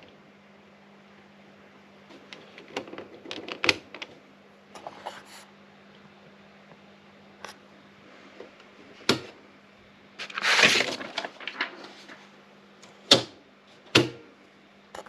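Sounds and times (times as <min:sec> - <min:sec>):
steady low hum: 0:00.0 - 0:15.0
typewriter clicks and knocks: 0:13.1 - 0:14.3.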